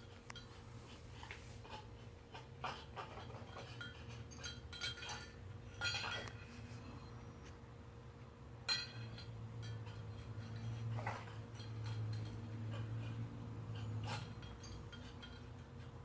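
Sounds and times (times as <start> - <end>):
clinks against a dish: 2.7 - 6.6, 8.6 - 13.0, 13.7 - 16.0.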